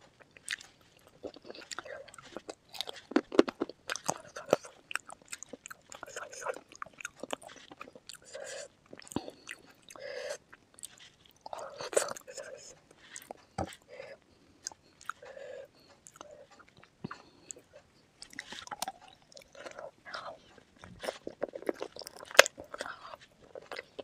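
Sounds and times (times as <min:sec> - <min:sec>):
chewing and crunching food: 0:00.0 - 0:24.0.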